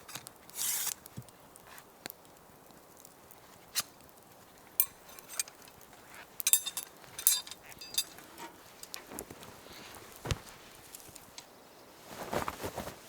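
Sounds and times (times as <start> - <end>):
metal camping gear clinking: 4.7 - 11.5.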